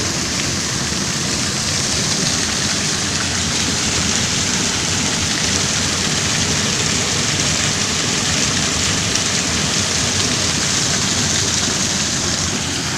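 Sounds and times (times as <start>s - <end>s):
heavy rain falling: 0.0s - 12.9s.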